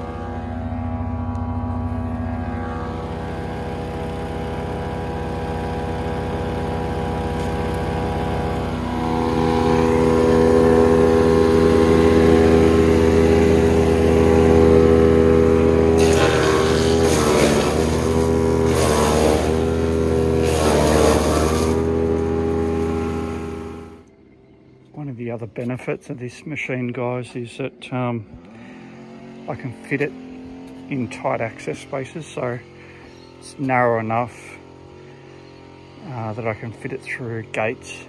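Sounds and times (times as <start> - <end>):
branches crunching through chipper: 0.0 - 24.1
wood chipper engine running: 0.0 - 38.0.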